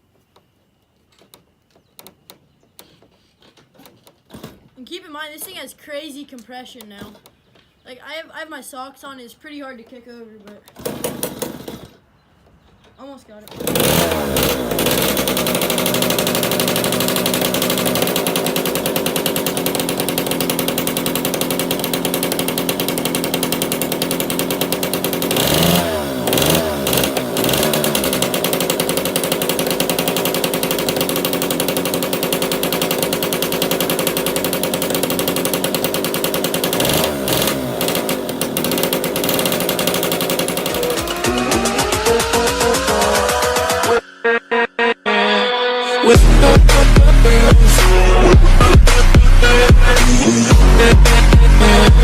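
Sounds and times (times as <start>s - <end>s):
two-stroke motorbike engine revving: 10.7s - 12.0s, 13.4s - 44.0s, 46.1s - 52.0s.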